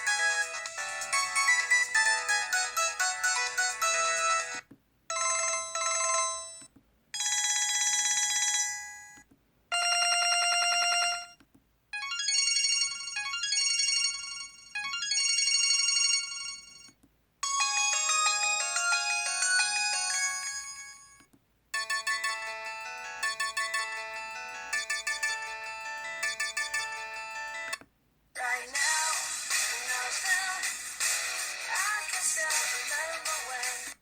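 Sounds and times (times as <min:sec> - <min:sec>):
mobile phone ringtones: 0:00.0 - 0:11.4, 0:12.0 - 0:27.8.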